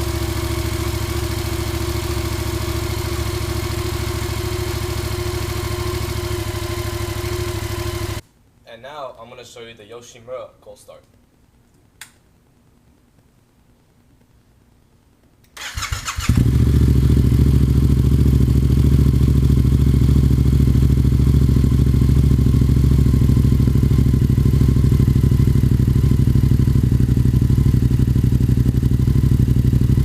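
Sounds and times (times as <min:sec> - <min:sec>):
motorcycle engine idling: 0:00.0 - 0:08.2, 0:15.8 - 0:30.0.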